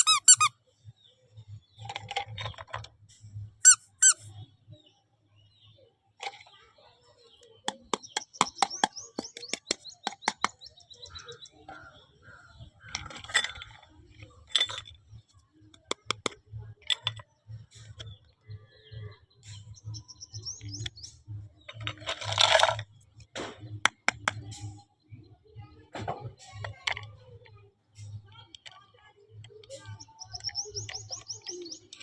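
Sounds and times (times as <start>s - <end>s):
plastic squeaking: 0.0s - 0.5s, 3.6s - 4.3s
plastic toy pieces clicking: 15.9s - 16.4s.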